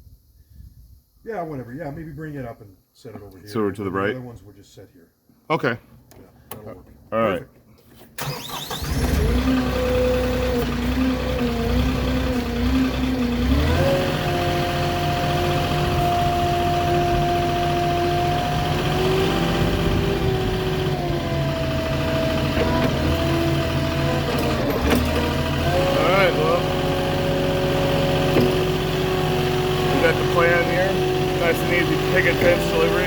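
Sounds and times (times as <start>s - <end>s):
forklift engine whining: 8.2s - 33.0s.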